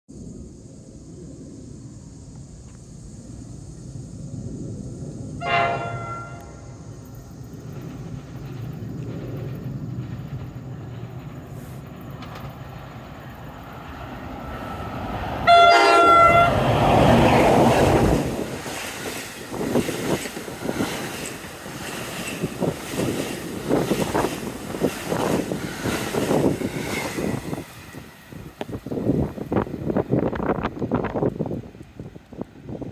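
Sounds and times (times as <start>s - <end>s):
train rumble: 0.2s - 32.9s
train rushing past: 3.2s - 32.9s
train horn blast: 5.4s - 6.8s, 15.4s - 17.6s
wheels clicking over rail joints: 7.0s - 15.3s, 16.2s - 32.9s.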